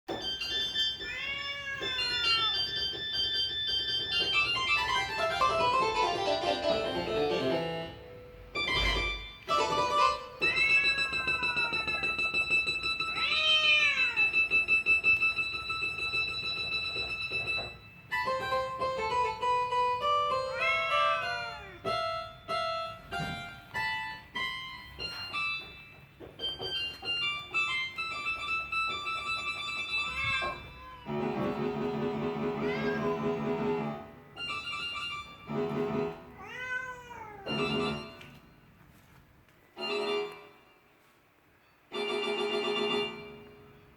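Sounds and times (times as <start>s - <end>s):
cat meowing: 1.0s - 2.7s, 10.4s - 12.3s, 13.0s - 14.5s, 20.4s - 21.9s, 30.0s - 31.1s, 32.5s - 33.4s, 36.3s - 37.6s
piano notes: 1.9s - 13.2s, 14.3s - 36.4s, 37.4s - 38.6s
repeated keyboard chords: 2.6s - 10.7s, 14.5s - 30.1s.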